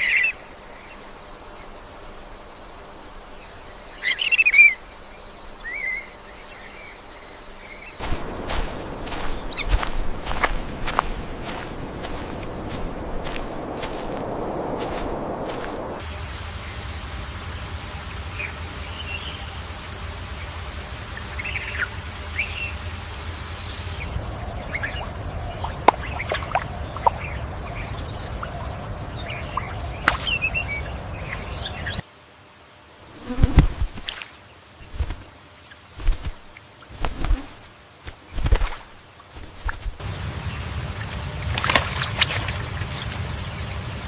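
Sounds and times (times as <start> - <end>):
insects buzzing with high whine: 0.0 - 44.0
bird chirps: 5.6 - 12.4, 16.0 - 32.0
rustling wing flaps: 8.0 - 24.0, 33.1 - 43.7.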